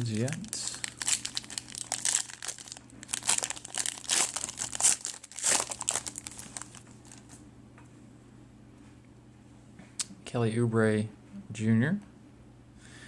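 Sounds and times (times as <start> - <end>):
wrapper crinkling: 0.0 - 7.4.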